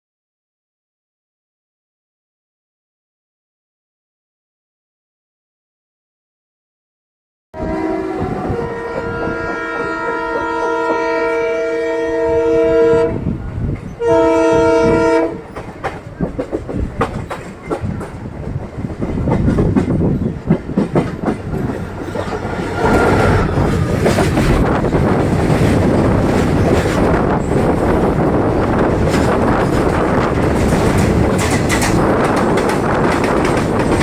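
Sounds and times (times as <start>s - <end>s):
multi-tone train horn blasts: 7.6s - 13.4s, 14.0s - 15.6s, 22.2s - 24.2s
train wheels clattering over rail joints: 15.4s - 34.0s.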